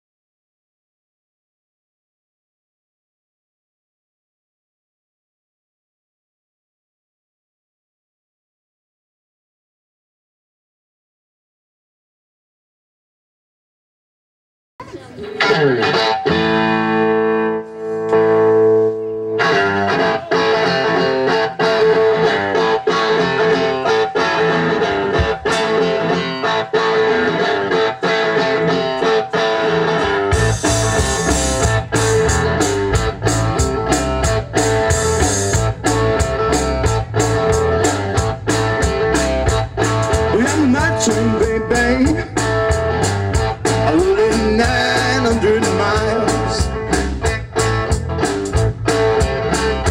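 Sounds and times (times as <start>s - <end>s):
heavy low rhythm part: 14.8s - 49.9s
strummed blues guitar: 14.8s - 49.9s.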